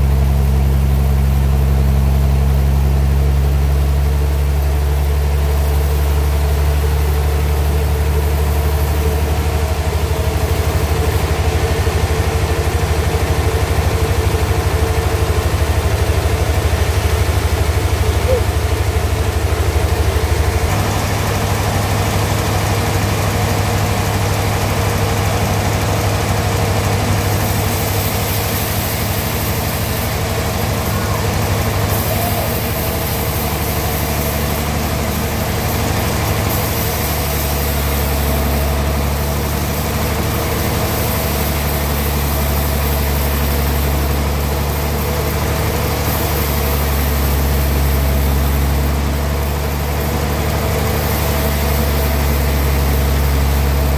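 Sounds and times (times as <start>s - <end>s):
sawmill engine running under load: 0.0s - 53.9s
high hissing: 27.4s - 34.6s.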